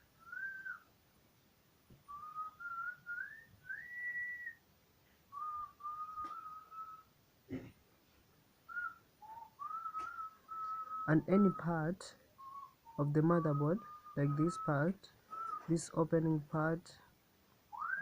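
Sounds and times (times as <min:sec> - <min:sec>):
person whistling a tune: 0:02.1 - 0:04.6, 0:05.3 - 0:07.1, 0:08.7 - 0:11.7, 0:12.4 - 0:15.7, 0:17.7 - 0:18.0.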